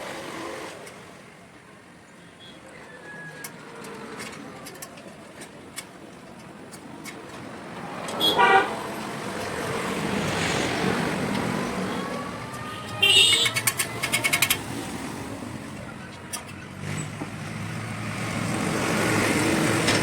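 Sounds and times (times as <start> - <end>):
passing vehicle: 2.6 - 20.0
vehicle horn honking: 8.2 - 8.8, 12.6 - 13.8.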